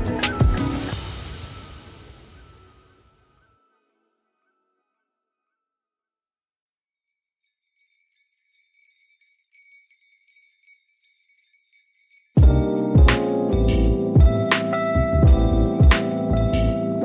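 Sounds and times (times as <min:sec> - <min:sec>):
faint high jingling bells: 0:07.0 - 0:16.9.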